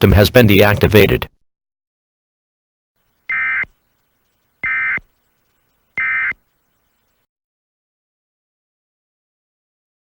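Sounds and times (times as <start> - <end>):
two-tone digital data warble: 3.3 - 3.7, 4.6 - 5.3.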